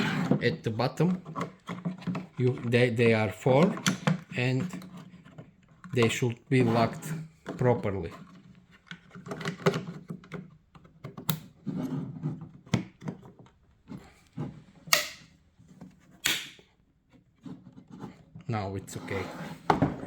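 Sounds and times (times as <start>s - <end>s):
plastic clicks and knocks: 1.1s - 6.2s, 7.4s - 11.6s, 12.4s - 13.6s
short scraping noises: 18.9s - 19.7s.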